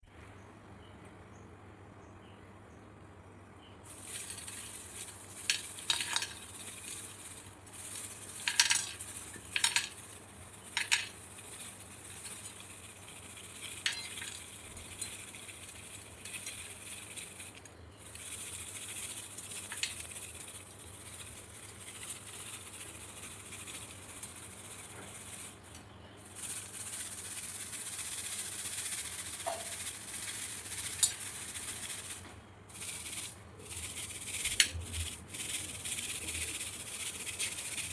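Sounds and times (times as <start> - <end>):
dry rustling and rattling: 3.9 - 37.9
hard grains clicking: 3.9 - 37.9.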